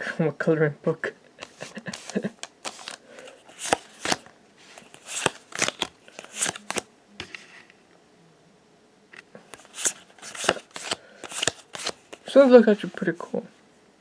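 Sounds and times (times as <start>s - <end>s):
trading cards flicking and swishing: 1.4s - 6.9s, 9.5s - 13.1s.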